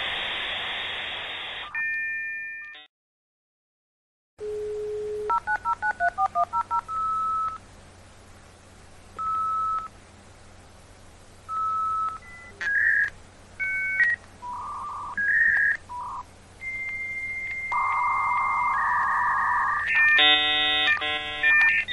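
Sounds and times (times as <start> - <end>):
dial tone: 4.4 - 7.6, 16.6 - 21.9
touch-tone digits: 11.5 - 21.9
modem handshake tones: 19.7 - 21.9.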